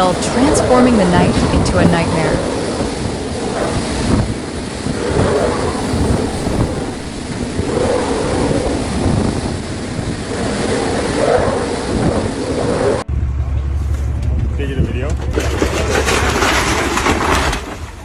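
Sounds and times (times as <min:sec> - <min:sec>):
pounding hail: 0:00.0 - 0:11.0
low steady hum: 0:00.0 - 0:11.2
wind buffeting microphone: 0:00.0 - 0:13.0.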